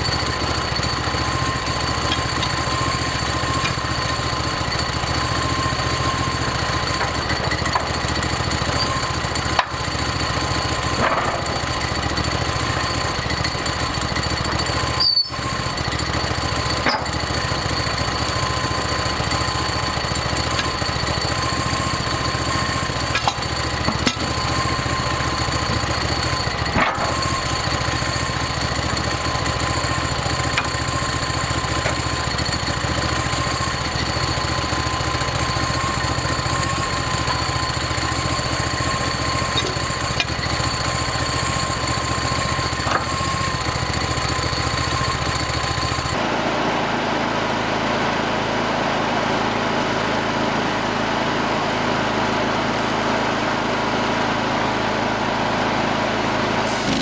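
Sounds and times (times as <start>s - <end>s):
sawmill engine droning: 0.0s - 57.0s
band blade whine: 56.6s - 57.0s.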